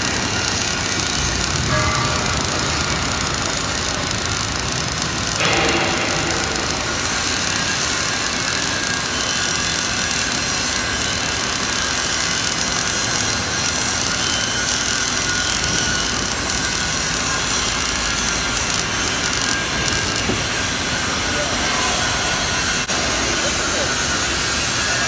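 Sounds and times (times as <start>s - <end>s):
welding arc crackling hiss: 0.0s - 21.1s.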